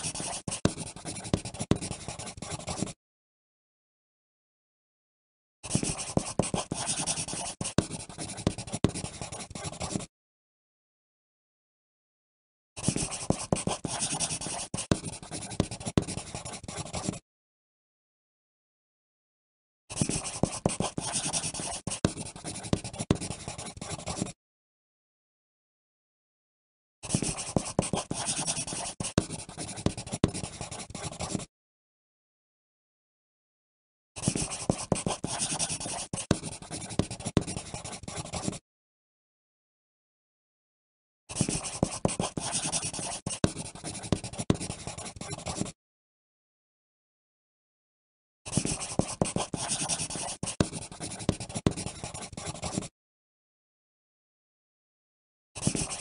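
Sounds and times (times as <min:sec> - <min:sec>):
pencil writing on paper: 0:00.0 - 0:03.0, 0:05.6 - 0:10.1, 0:12.8 - 0:17.2, 0:19.9 - 0:24.4, 0:27.0 - 0:31.5, 0:34.2 - 0:38.6, 0:41.3 - 0:45.8, 0:48.5 - 0:52.9, 0:55.6 - 0:56.0.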